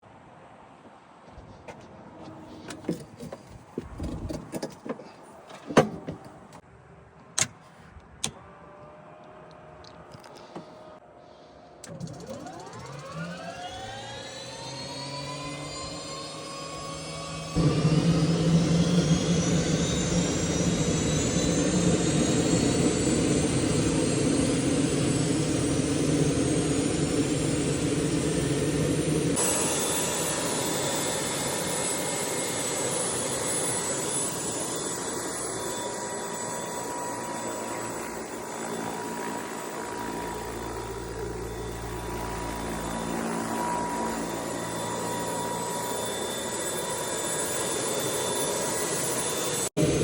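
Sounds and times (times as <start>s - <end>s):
helicopter engine whine: 11.8s - 50.0s.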